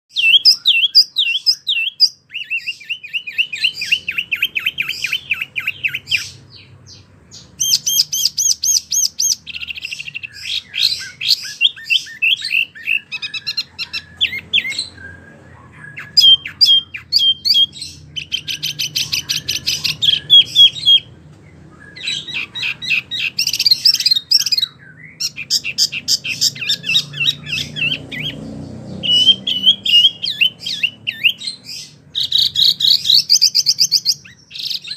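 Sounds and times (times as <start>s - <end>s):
songbird singing trills: 0.1s - 34.9s.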